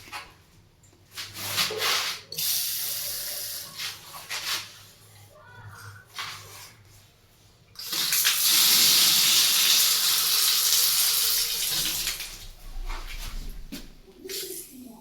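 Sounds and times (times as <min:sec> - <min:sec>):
water running from a tap: 0:07.8 - 0:12.5.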